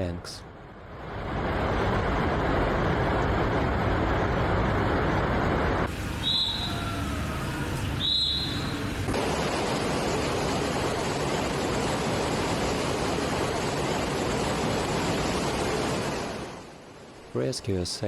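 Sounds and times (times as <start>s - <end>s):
floodwater rushing: 5.9s - 17.2s
high-pitched squeal: 6.0s - 9.0s.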